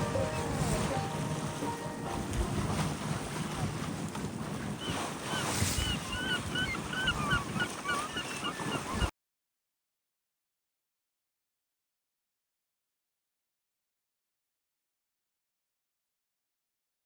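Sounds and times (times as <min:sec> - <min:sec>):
birds chirping: 0:05.3 - 0:09.1.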